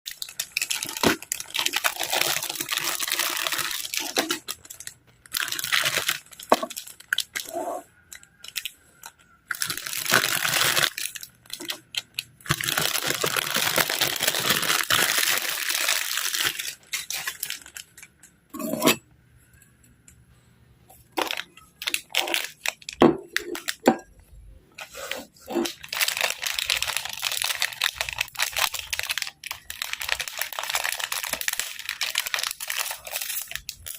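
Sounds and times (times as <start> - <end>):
plastic packaging rustling: 0.1 - 18.2, 21.1 - 24.1, 24.8 - 33.9.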